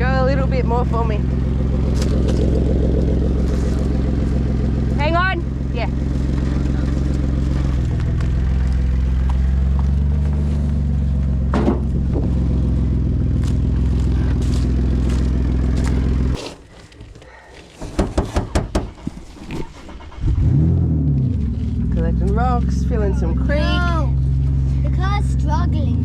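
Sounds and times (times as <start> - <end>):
car engine running: 0.0 - 16.9, 18.0 - 26.0
sharp knocks and clatter: 11.5 - 12.3, 17.8 - 19.7
crunch: 13.3 - 17.8.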